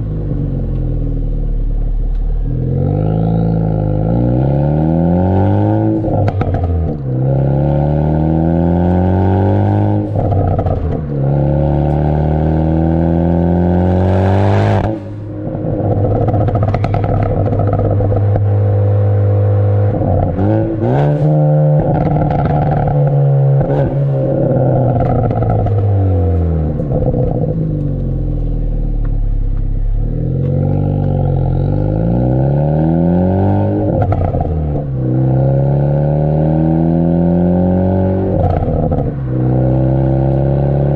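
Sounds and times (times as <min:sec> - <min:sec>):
car exhaust revving: 0:00.0 - 0:40.9
exhaust pops and crackles: 0:06.1 - 0:07.5, 0:10.1 - 0:11.3, 0:15.8 - 0:18.6, 0:21.8 - 0:31.3.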